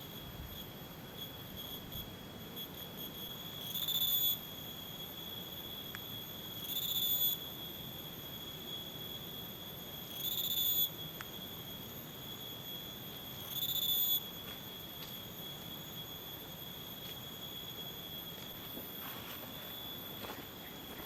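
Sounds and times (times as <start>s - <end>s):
insect high-pitched drone: 0.0s - 21.0s.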